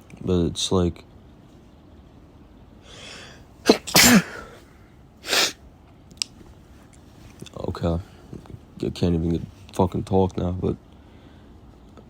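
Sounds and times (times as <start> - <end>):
noisy breath: 2.8 - 5.6, 11.0 - 11.7
man inhaling: 2.9 - 4.6, 5.3 - 5.6
man sneezing: 3.7 - 4.6, 5.2 - 5.6.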